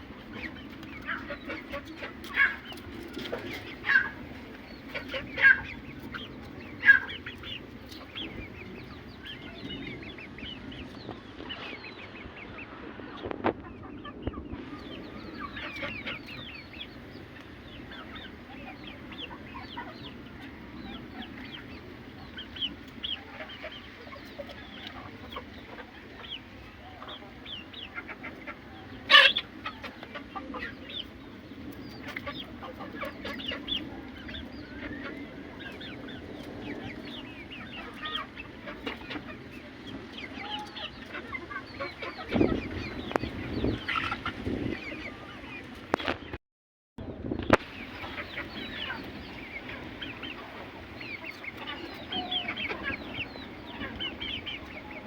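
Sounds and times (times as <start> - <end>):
chickens clucking and chirping: 0.0 - 46.4, 47.2 - 55.0.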